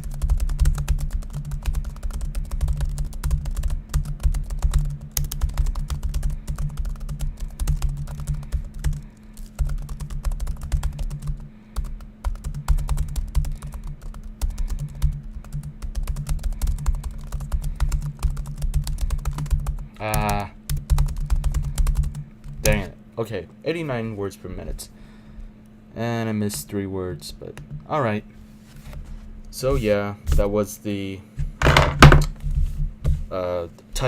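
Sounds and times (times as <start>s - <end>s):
laptop keyboard typing: 0.0s - 22.9s
steady low hum: 0.0s - 34.0s.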